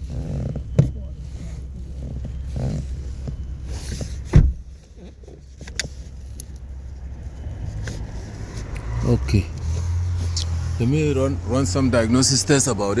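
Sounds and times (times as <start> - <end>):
heavy thump: 3.3 - 4.8.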